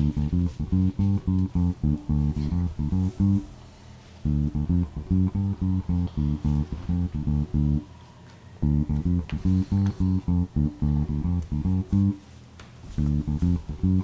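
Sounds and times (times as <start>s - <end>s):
staccato bass guitar riff: 0.0s - 3.6s, 4.2s - 7.9s, 8.6s - 12.2s, 13.0s - 14.0s.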